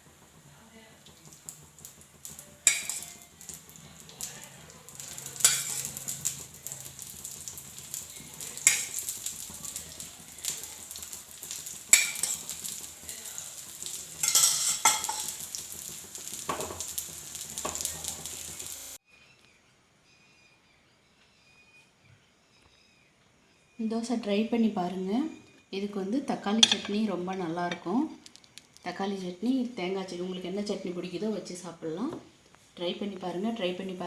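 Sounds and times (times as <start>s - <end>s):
batter sizzling on a griddle: 0.0s - 19.0s
utensil clinking against pan: 14.2s - 15.3s.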